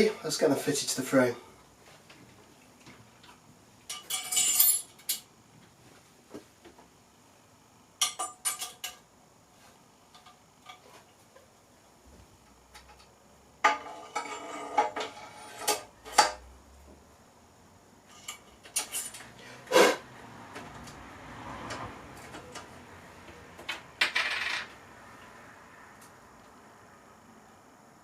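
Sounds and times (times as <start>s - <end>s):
metal bicycle parts clinking: 3.9s - 5.3s.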